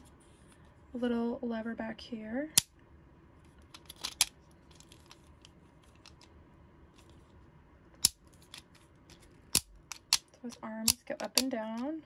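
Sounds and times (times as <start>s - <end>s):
sharp plastic snaps: 9.4s - 11.9s
plastic toy lever clicking: 10.9s - 11.5s.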